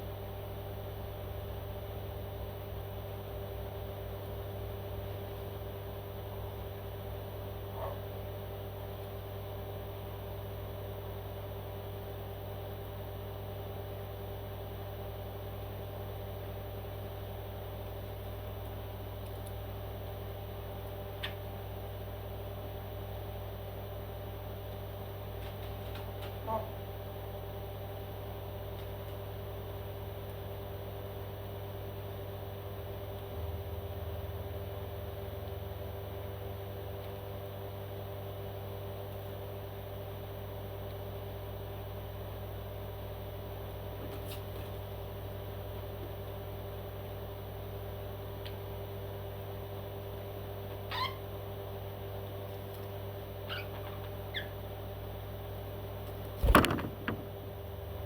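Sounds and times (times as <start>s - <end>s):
steady machine hum: 50.9s - 58.0s.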